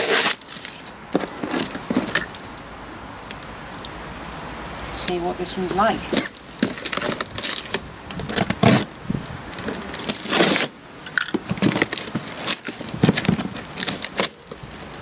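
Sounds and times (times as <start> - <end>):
cardboard parcel rustling: 0.0 - 2.5, 5.9 - 15.0
cardboard rasping: 6.1 - 9.0, 9.6 - 10.7, 11.4 - 14.6.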